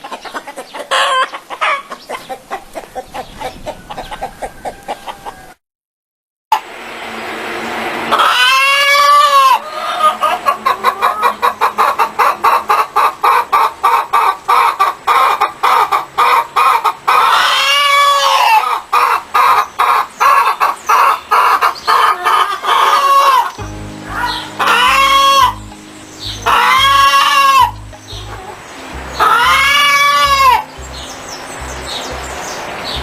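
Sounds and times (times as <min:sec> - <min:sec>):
hens clucking: 0:00.0 - 0:05.5, 0:08.1 - 0:33.0
hen drawn-out call: 0:08.1 - 0:25.7, 0:26.3 - 0:28.6, 0:29.2 - 0:30.7.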